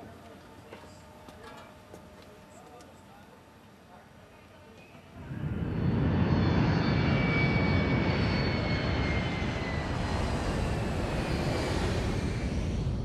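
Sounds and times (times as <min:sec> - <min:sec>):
aircraft engine roar: 0:00.0 - 0:13.0
high whine falling in pitch: 0:05.2 - 0:13.0.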